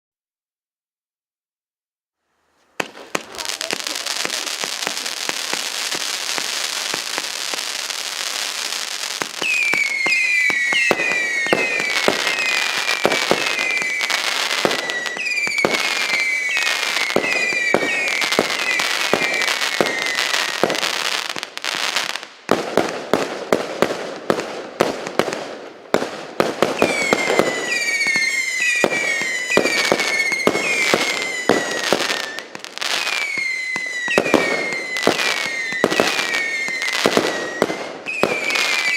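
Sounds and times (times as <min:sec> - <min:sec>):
fireworks hiss and crackle: 0:02.5 - 0:38.9
fireworks bangs: 0:02.6 - 0:38.9
falling whistles: 0:09.2 - 0:20.8, 0:26.8 - 0:38.9.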